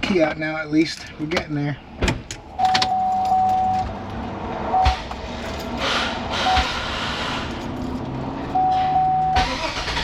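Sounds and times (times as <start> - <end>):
car warning chime beeps: 2.5 - 3.8, 8.5 - 9.7.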